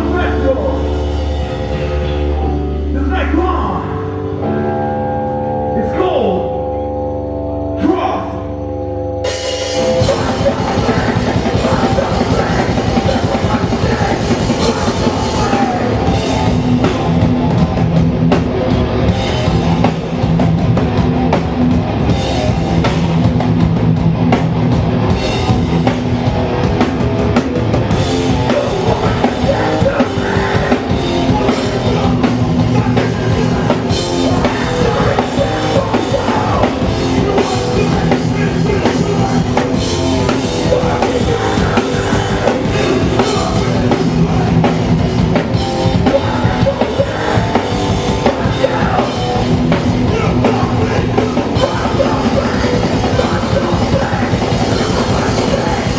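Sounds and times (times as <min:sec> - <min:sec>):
punk band playing live: 0:00.0 - 0:55.9
shouted vocals: 0:10.0 - 0:16.2.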